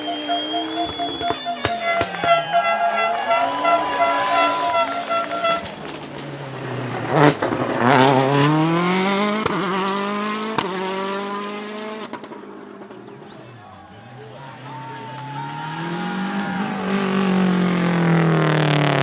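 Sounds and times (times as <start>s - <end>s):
exhaust cracks: 0.0s - 9.8s
rally car engine pulling hard: 0.0s - 19.0s.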